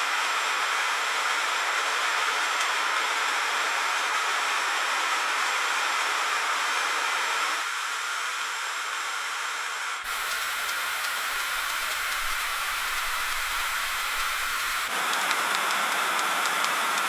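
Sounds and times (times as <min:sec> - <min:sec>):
freezing rain hissing: 0:10.1 - 0:17.0.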